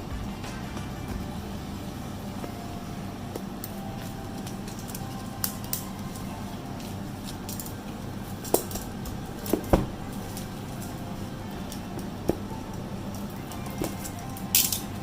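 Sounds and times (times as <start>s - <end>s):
steady low hum: 0.0s - 15.0s
keyboard and packaging clicks: 3.3s - 11.0s.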